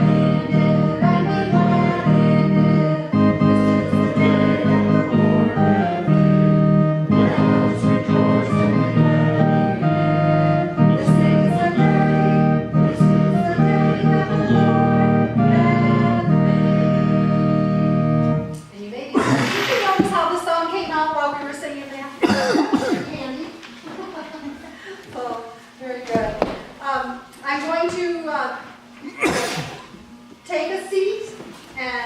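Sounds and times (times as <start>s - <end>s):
hymn melody of held notes: 0.0s - 18.6s.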